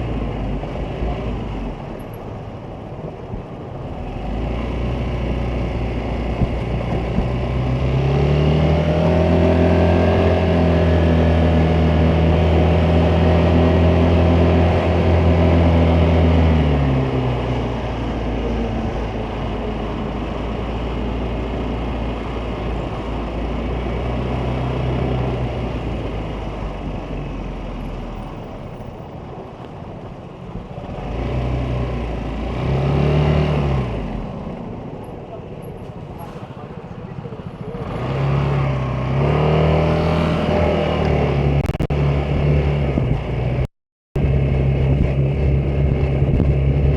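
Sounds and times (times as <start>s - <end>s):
road and wind noise: 0.0s - 46.9s
scooter engine under throttle: 33.0s - 46.9s.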